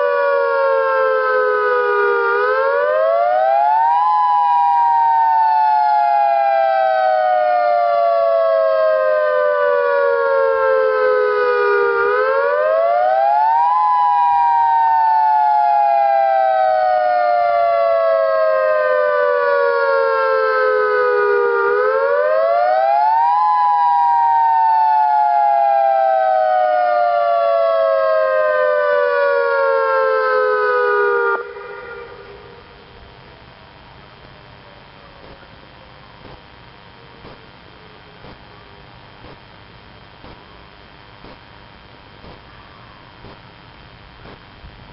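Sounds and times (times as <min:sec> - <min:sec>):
dual-tone tornado siren wailing: 0:00.0 - 0:33.0.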